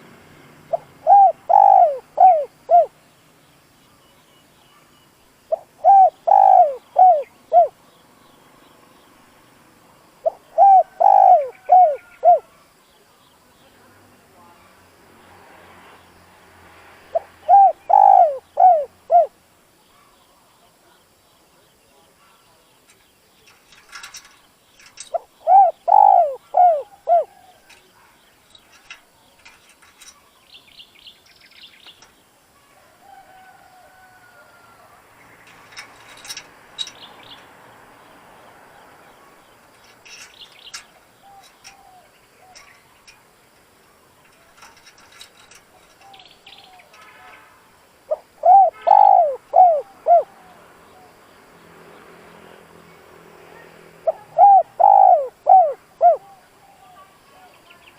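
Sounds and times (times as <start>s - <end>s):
small birds chirping: 0.0s - 32.8s, 35.1s - 57.9s
dove cooing: 0.7s - 3.0s, 5.5s - 7.8s, 10.2s - 12.6s, 17.1s - 19.4s, 23.7s - 30.3s, 39.8s - 43.2s, 48.1s - 51.2s, 54.0s - 57.5s.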